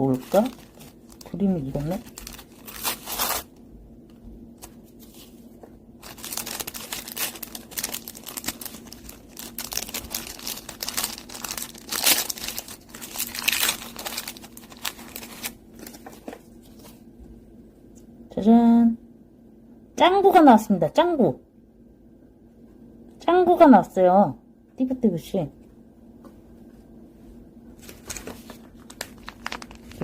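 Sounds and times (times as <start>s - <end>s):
plastic wrapper tearing: 0.0s - 3.6s, 6.0s - 16.4s, 27.8s - 30.0s
plastic wrapper rustling: 0.0s - 17.0s, 27.8s - 30.0s.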